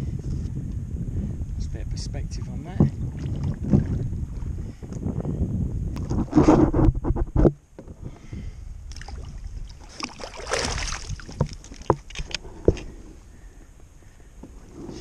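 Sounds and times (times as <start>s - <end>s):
sharp knocks on hull: 10.4s - 12.1s
rustling and clatter: 10.8s - 13.1s.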